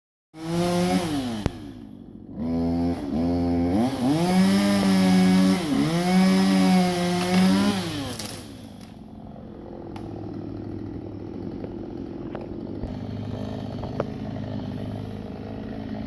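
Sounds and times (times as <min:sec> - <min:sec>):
chainsaw engine revving: 0:00.4 - 0:16.0.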